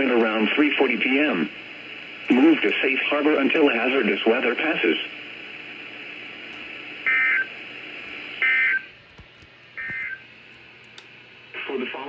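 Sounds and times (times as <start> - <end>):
faint radio hiss: 0.0 - 8.8, 11.0 - 12.0.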